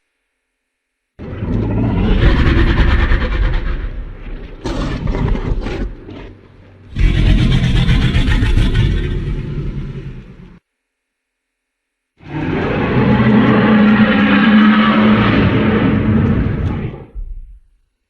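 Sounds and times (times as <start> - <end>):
deep creature roar: 1.2 - 10.0, 12.2 - 17.4.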